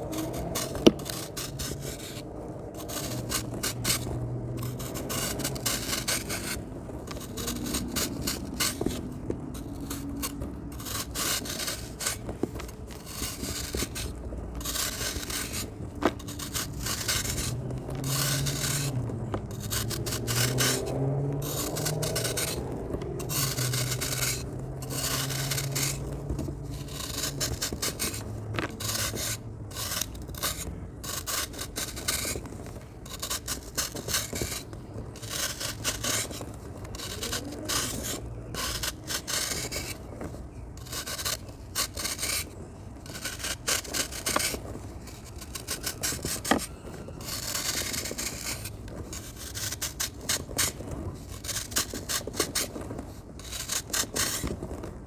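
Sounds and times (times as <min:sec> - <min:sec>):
dry sand crumbling: 0:00.0 - 0:55.0.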